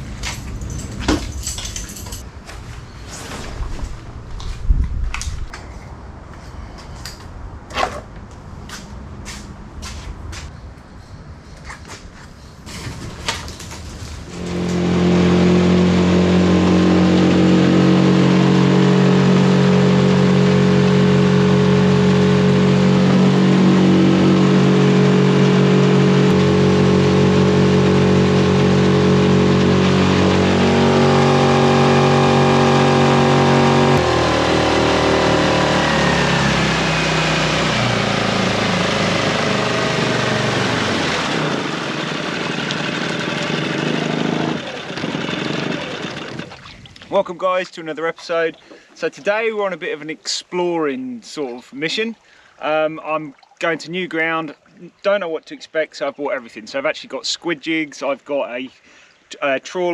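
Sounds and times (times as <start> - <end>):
outboard motor running: 14.3 - 47.1.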